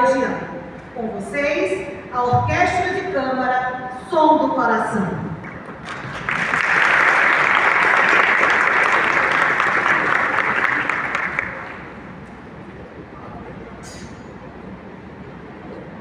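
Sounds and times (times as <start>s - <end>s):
audience applauding: 5.4s - 12.1s.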